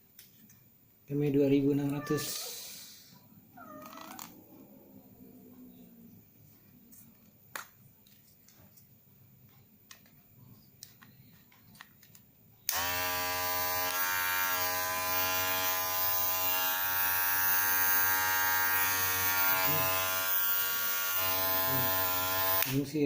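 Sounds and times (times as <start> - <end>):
electric hair clipper buzzing: 12.7 - 22.8.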